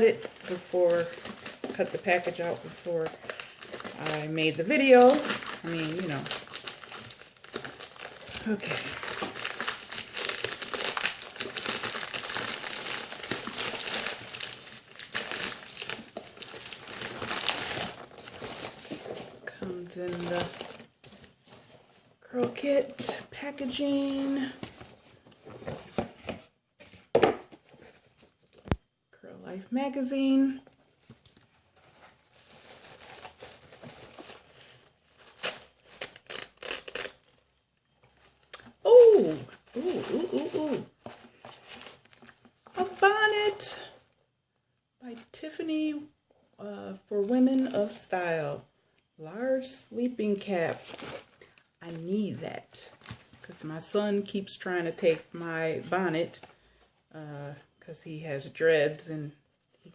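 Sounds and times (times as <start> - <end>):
packaging crinkling: 0.0 - 21.8, 31.0 - 43.2, 50.2 - 52.2.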